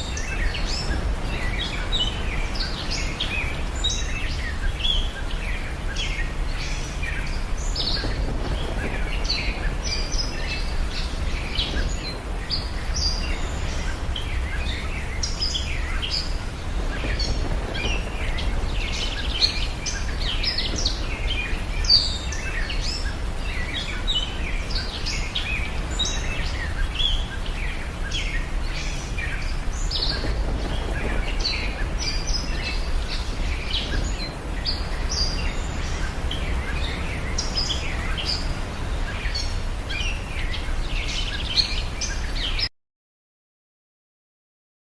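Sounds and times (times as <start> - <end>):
small birds chirping: 0.0 - 42.7
steady low rumble: 6.8 - 39.8.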